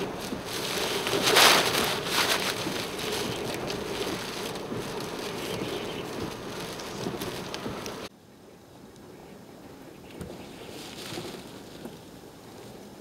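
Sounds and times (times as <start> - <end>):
strong wind buffeting microphone: 0.0 - 8.1.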